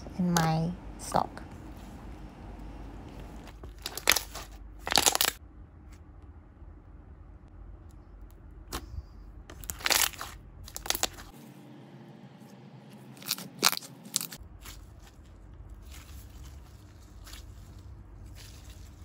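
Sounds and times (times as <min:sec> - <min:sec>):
slime popping and crackling: 0:03.6 - 0:05.4, 0:09.5 - 0:11.3.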